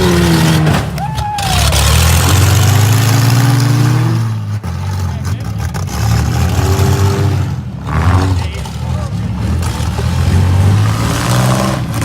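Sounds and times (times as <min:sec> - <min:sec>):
engines revving hard: 0:00.0 - 0:12.0
vehicles hitting with sharp knocks: 0:00.0 - 0:12.0.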